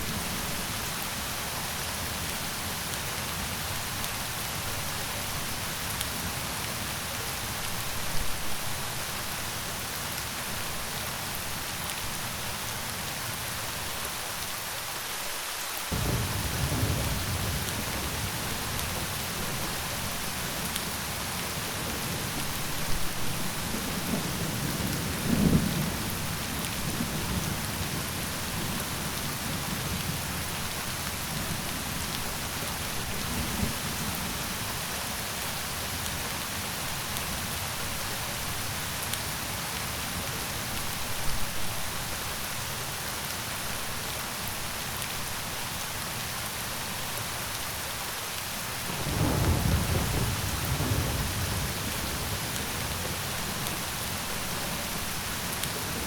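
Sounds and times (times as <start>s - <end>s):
steady rainfall: 0.0s - 56.0s
thunder rumbling: 15.9s - 20.8s, 48.9s - 56.0s.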